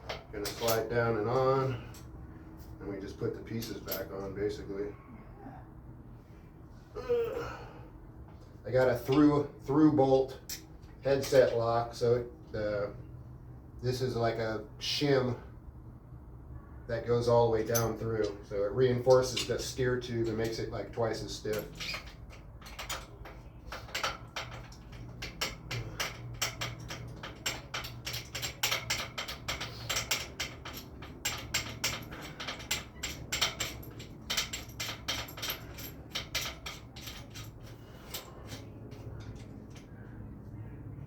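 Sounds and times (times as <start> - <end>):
light metal clinks and taps: 21.4 - 40.3.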